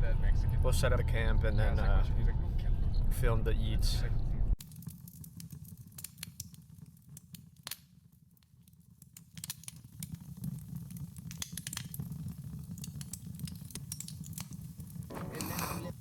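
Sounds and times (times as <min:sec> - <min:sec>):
low rumble: 0:00.0 - 0:04.6
small clicks and crackles: 0:04.6 - 0:15.6.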